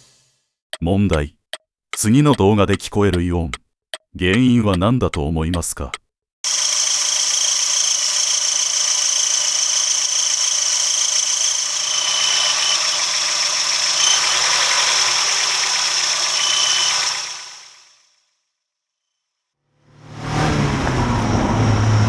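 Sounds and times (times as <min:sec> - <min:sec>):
car engine idling: 0:06.5 - 0:17.9
high-pitched chirping from engine: 0:06.5 - 0:18.2.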